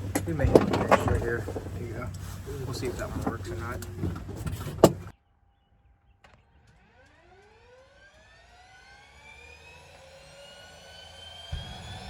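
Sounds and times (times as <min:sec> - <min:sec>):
handling noise: 0:00.0 - 0:05.1
helicopter turbine engine starting: 0:00.0 - 0:05.1, 0:07.0 - 0:12.0.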